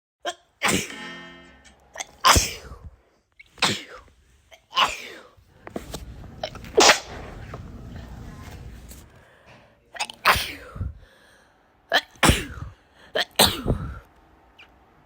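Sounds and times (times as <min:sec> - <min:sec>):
person sneezing: 0:00.3 - 0:01.0, 0:02.0 - 0:02.9, 0:03.6 - 0:05.4, 0:10.0 - 0:10.9, 0:11.9 - 0:14.0.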